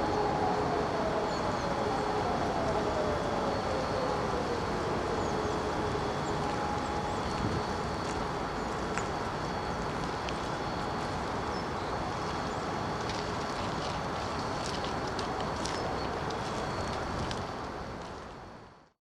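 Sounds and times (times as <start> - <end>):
distant siren falling in pitch: 0.0 - 13.3
distant traffic: 0.0 - 18.4
wind: 0.0 - 19.0.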